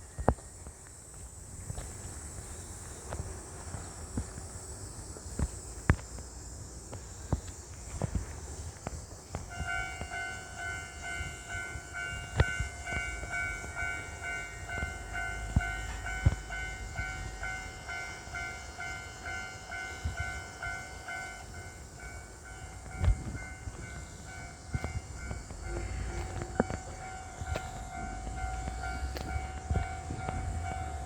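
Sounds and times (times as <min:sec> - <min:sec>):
level-crossing warning bell ringing: 0:09.5 - 0:31.0.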